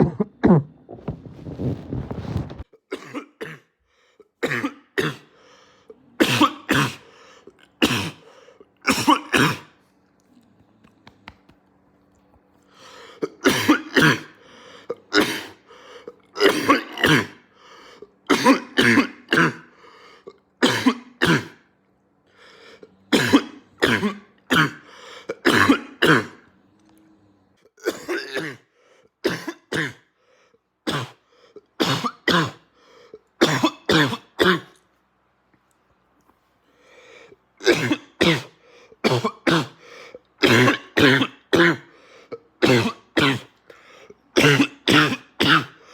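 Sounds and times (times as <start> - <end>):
man coughing in barking fits: 0.0 - 0.7, 2.9 - 3.7, 4.4 - 5.3, 6.2 - 7.0, 7.8 - 9.8, 13.2 - 14.4, 15.0 - 15.6, 16.3 - 17.4, 18.3 - 19.7, 20.6 - 21.6, 23.1 - 26.4, 27.8 - 30.1, 31.8 - 32.6, 33.4 - 34.8, 37.6 - 39.8, 40.4 - 43.6, 44.4 - 45.8.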